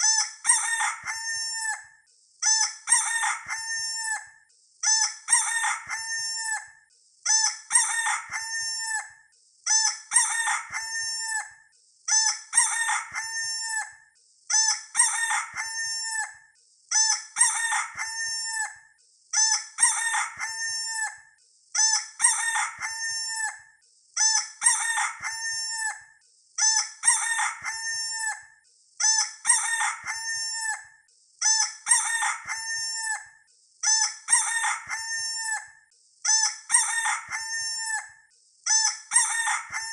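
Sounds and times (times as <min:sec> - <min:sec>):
rooster crowing: 0:00.5 - 0:01.8, 0:02.9 - 0:04.2, 0:05.3 - 0:06.7, 0:07.7 - 0:09.1, 0:10.1 - 0:11.5, 0:12.6 - 0:13.9, 0:15.0 - 0:16.4, 0:17.4 - 0:18.8, 0:19.9 - 0:21.2, 0:22.2 - 0:23.6, 0:24.7 - 0:26.0, 0:27.0 - 0:28.5, 0:29.4 - 0:30.8, 0:31.9 - 0:33.2, 0:34.4 - 0:35.6, 0:36.7 - 0:38.1, 0:39.1 - 0:39.9.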